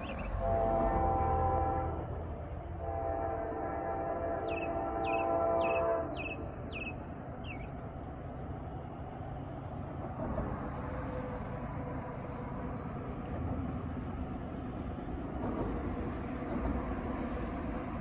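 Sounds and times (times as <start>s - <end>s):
locomotive air horn: 0.0s - 6.2s
train rumble: 0.0s - 18.0s.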